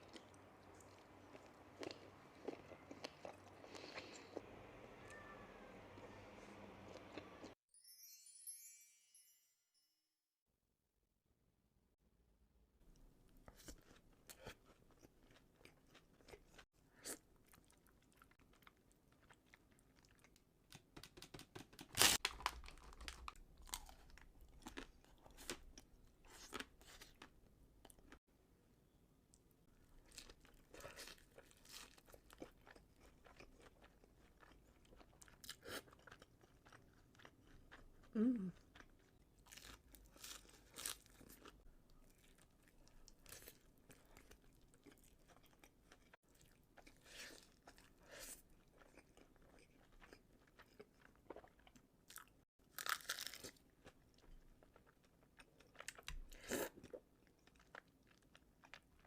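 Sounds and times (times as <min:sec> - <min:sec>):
person biting and chewing: 0:52.7 - 0:53.6.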